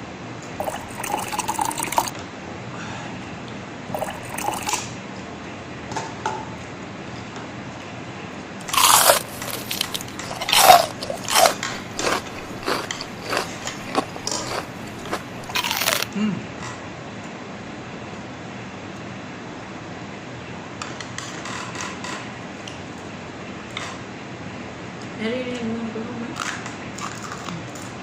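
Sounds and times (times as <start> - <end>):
crunching and chewing fried chicken: 0.6 - 2.1, 4.0 - 4.9, 8.6 - 16.1, 26.4 - 28.0.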